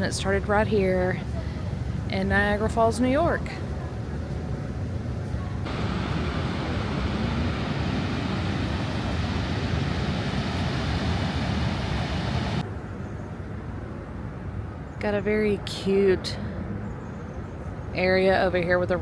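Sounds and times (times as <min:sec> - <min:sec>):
waterfall rushing: 0:05.7 - 0:12.6.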